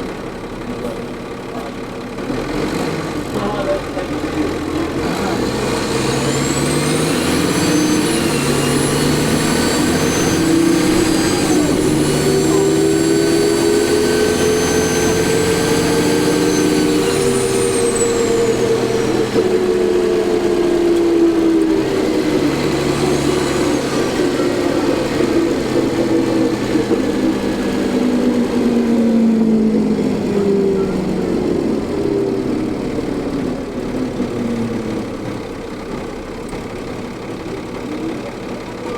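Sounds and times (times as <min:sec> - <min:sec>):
bus diesel engine pulling: 0:00.0 - 0:38.9
turbocharger whine: 0:02.0 - 0:38.9.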